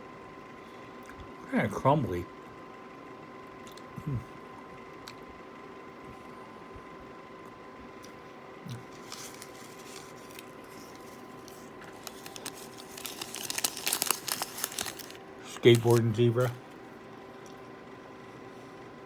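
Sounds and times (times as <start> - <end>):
faint electrical hum: 0.0 - 19.0
paper and foil crinkling: 8.8 - 16.6.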